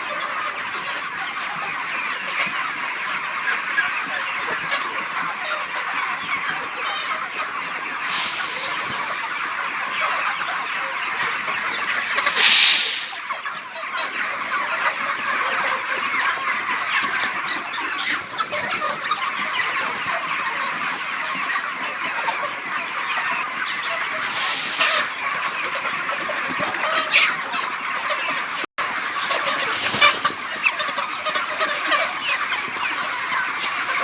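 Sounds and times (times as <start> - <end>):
chickens clucking: 0.0 - 34.0
loud noisy burst: 12.4 - 13.3.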